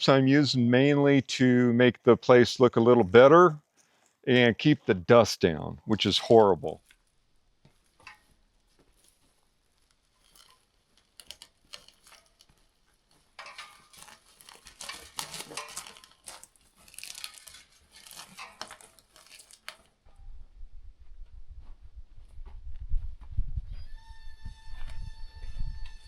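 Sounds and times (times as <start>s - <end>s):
rustling of handled objects: 5.9s - 20.2s.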